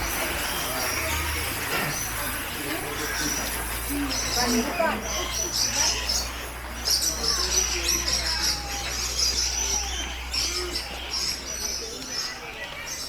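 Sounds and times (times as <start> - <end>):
faint voices: 0.0 - 13.0
many small birds chirping: 0.0 - 13.0.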